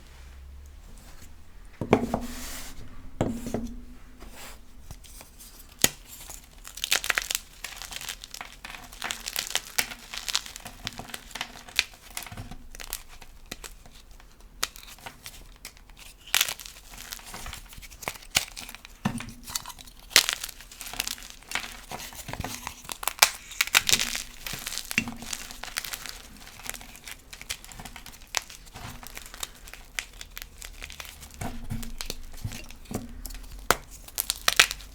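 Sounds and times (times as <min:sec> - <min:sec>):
chalk blocks crushed by hand: 0:16.3 - 0:34.9.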